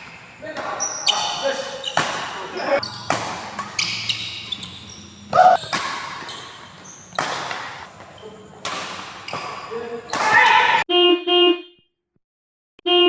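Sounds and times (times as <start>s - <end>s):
squeak or shout: 0.8s - 3.1s, 3.8s - 5.7s, 9.7s - 10.8s
racket striking shuttlecock: 1.9s - 4.7s, 5.3s - 10.8s.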